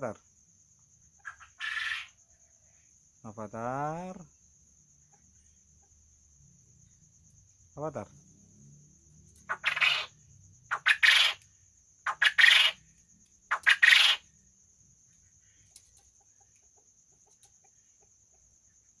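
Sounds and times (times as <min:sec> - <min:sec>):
quail calling: 0:01.2 - 0:02.2, 0:09.4 - 0:12.9, 0:13.5 - 0:14.3.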